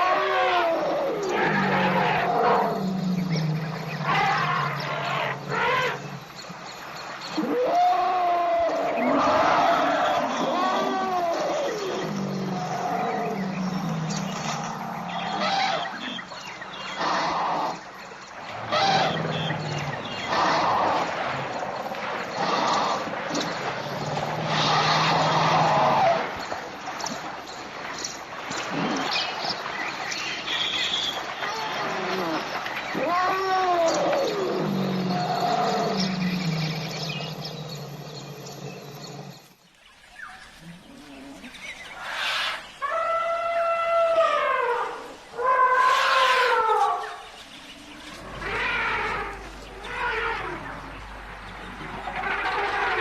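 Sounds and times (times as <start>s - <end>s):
elephant screeching call: 7.3s - 16.1s, 18.6s - 21.1s, 31.4s - 39.4s, 42.0s - 47.2s, 48.0s - 51.0s.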